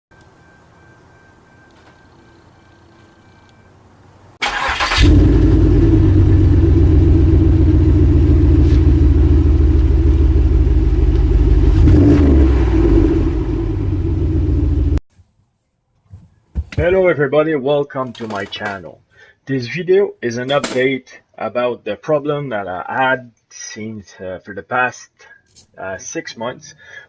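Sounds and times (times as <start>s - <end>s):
car engine starting and running: 4.4s - 15.0s
deep exhaust note: 5.0s - 15.0s.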